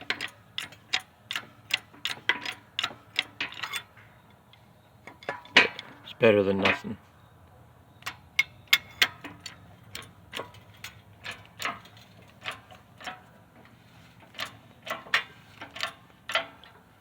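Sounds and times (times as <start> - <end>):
metallic clicks and taps: 0.0 - 3.8, 8.0 - 13.7, 14.3 - 16.8.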